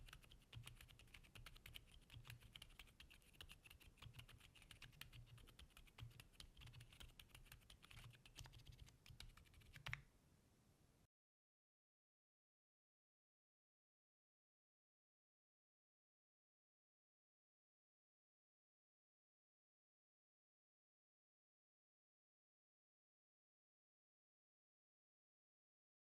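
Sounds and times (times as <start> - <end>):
soft keyboard typing: 0.0 - 10.1.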